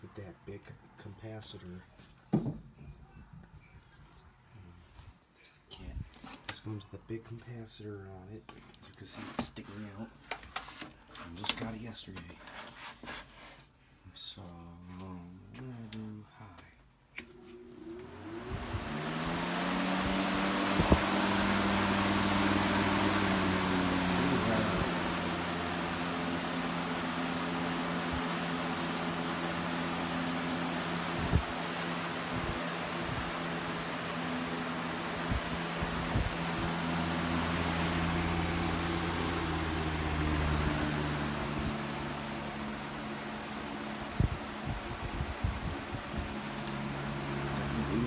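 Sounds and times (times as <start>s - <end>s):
box fan motor hum and air: 17.2s - 48.0s.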